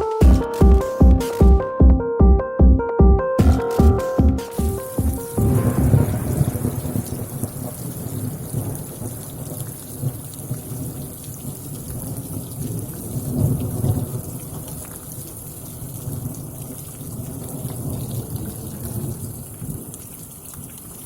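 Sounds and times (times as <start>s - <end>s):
steady rain hiss: 4.4s - 21.0s
rolling thunder rumbles: 5.4s - 11.1s.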